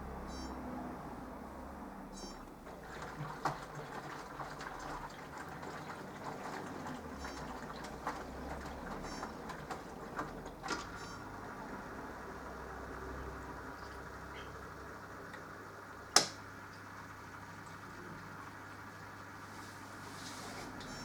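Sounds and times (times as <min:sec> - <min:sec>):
short high beep: 0:00.3 - 0:00.6, 0:02.2 - 0:02.4
water sloshing in washing machine drum: 0:02.6 - 0:11.1.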